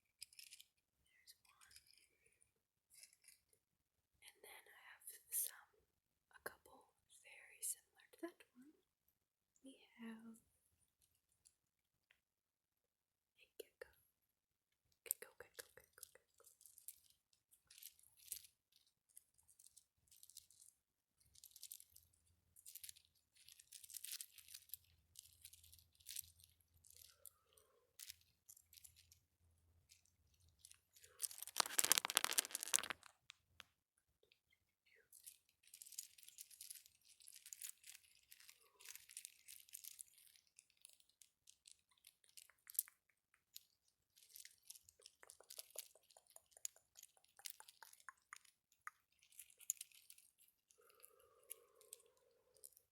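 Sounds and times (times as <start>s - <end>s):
crisp crackling and crinkling: 15.1s - 33.7s, 34.3s - 52.9s.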